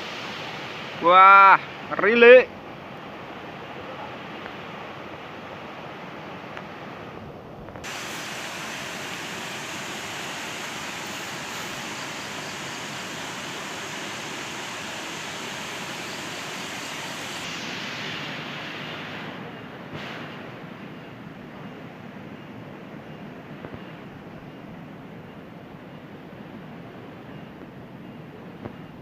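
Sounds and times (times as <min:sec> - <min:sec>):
water flowing in a canal: 0:00.0 - 0:29.0.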